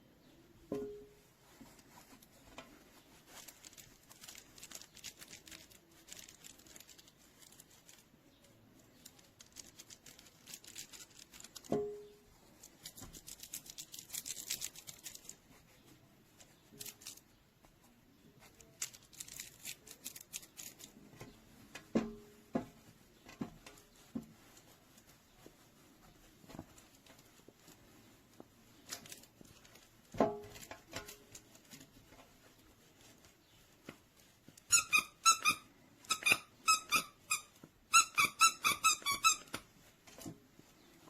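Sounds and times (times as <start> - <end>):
squeaky toy squeak: 34.7 - 39.6.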